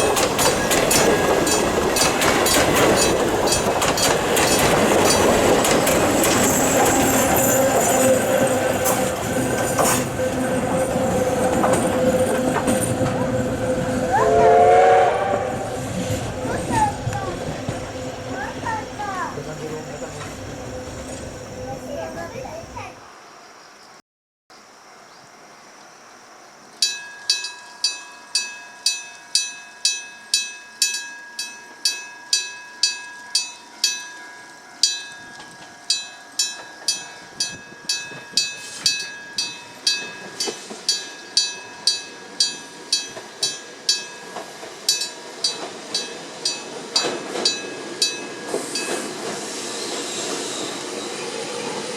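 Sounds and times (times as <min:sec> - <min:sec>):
approaching train rumble: 0:00.0 - 0:23.2, 0:36.5 - 0:51.9.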